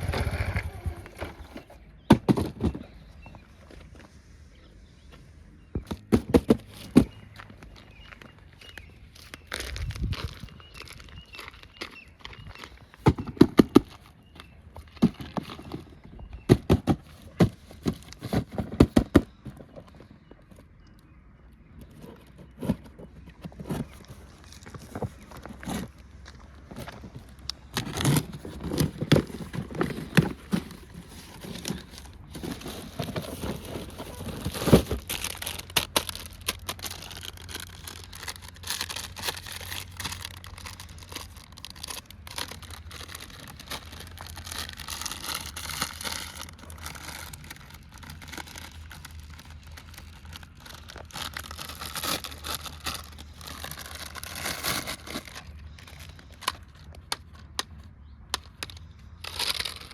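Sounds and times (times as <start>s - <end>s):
packaging crinkling and tearing: 6.1s - 19.4s, 23.5s - 59.9s.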